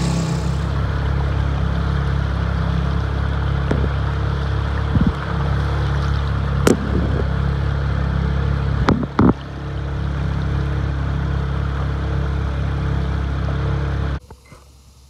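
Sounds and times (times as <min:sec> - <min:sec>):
motorboat engine running: 0:00.0 - 0:14.2
rush of wind and water: 0:04.6 - 0:07.4.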